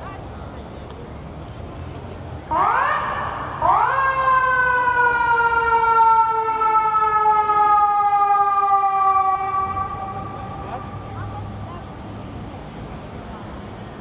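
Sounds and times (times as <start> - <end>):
emergency vehicle siren wailing: 2.4 - 12.7.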